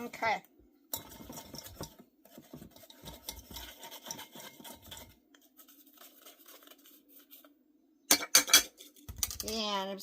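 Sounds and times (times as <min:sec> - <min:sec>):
spoon scraping sugar through strainer: 0:00.0 - 0:07.6.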